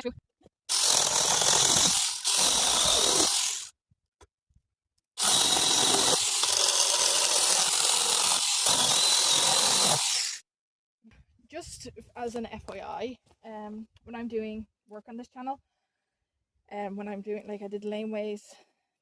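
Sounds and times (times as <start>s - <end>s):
power tool cutting branches: 0.7s - 3.7s, 5.2s - 10.4s.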